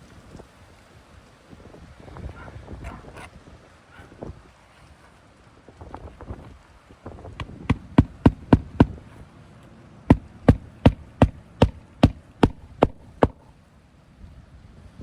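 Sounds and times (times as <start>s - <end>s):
hammer striking roofing nails: 7.4s - 9.0s, 10.1s - 13.5s.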